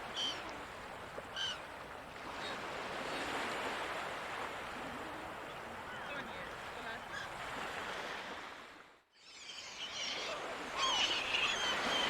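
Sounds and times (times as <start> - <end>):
gull call: 9.3 - 12.0.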